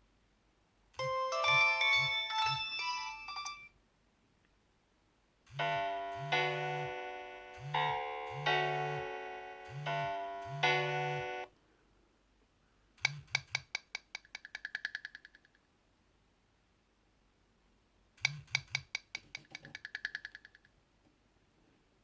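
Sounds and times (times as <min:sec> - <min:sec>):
phone ringtone melody: 0:01.0 - 0:03.7, 0:05.6 - 0:11.5
sustained ringtone: 0:01.0 - 0:03.7, 0:05.6 - 0:11.5
phone vibrate buzzes: 0:05.5 - 0:11.5.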